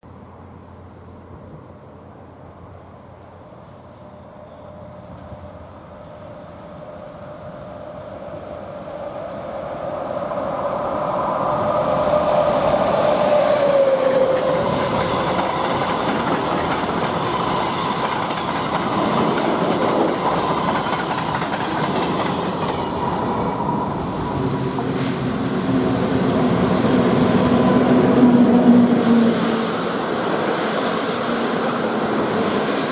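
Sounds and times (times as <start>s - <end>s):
electric locomotive passing: 0.2s - 32.9s
train wagons running on rails: 8.3s - 32.9s.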